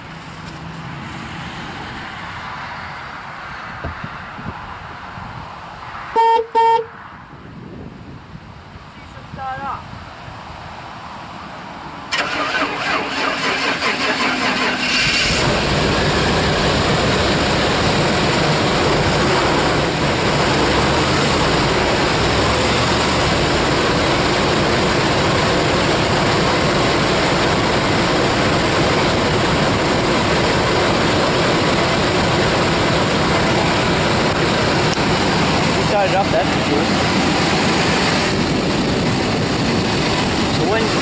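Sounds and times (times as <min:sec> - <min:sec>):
engine cranking and idling: 0:12.1 - 0:41.0.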